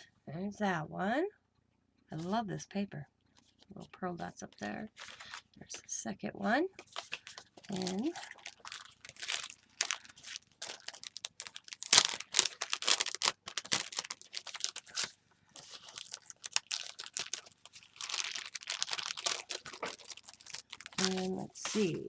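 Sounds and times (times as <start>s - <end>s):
paper wrapping crinkling: 4.6s - 5.6s, 6.8s - 22.0s.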